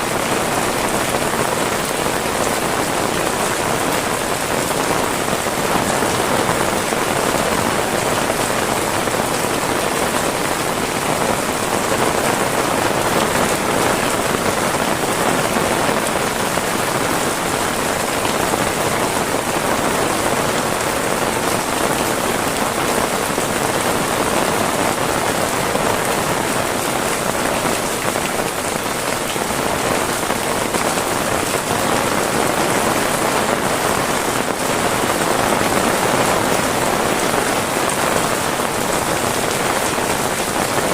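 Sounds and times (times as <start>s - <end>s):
heavy rain pattering: 0.0s - 40.9s.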